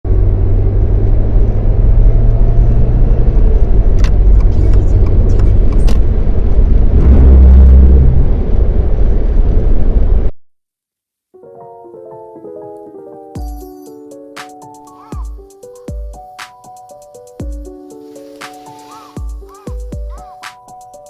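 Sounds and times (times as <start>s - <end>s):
car engine and road rumble: 0.1s - 10.3s.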